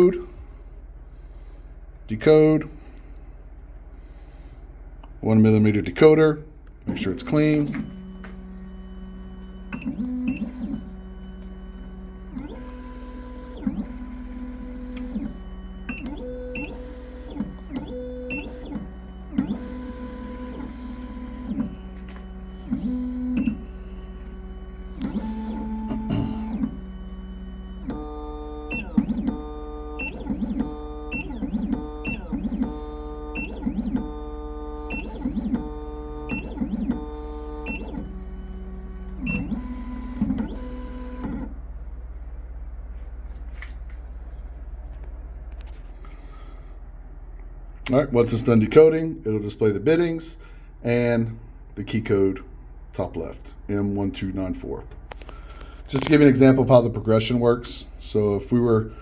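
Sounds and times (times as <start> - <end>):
steady low hum: 0.0 - 59.0
stepper motors whining: 6.8 - 41.7.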